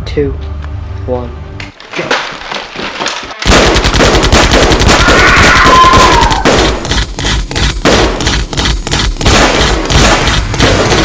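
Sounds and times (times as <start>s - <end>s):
rapid automatic gunfire: 3.4s - 11.0s.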